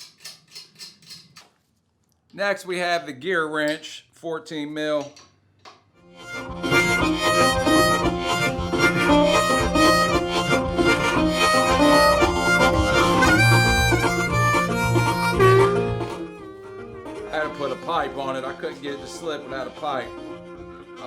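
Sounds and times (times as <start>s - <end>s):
harmonica tune: 6.0s - 21.0s
low musical accompaniment: 6.0s - 21.0s.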